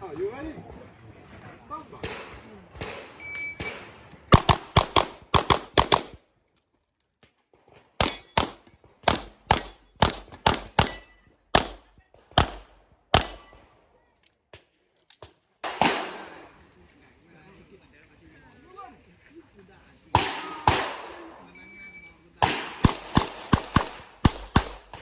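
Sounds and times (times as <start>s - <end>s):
rapid handgun fire: 2.0s - 6.2s, 8.0s - 13.6s, 15.6s - 16.5s, 20.2s - 21.5s, 22.4s - 25.0s.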